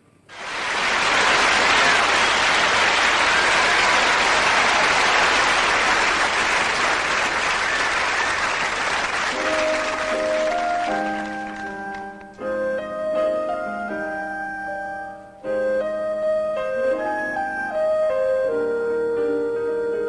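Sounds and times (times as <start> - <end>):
audience applauding: 0.3 - 12.4
piano chords: 0.3 - 20.0.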